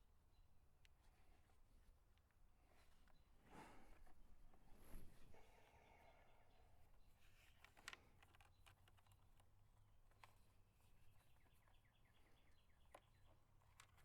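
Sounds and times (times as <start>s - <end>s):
small parts clicking: 7.4s - 10.4s, 12.8s - 14.0s.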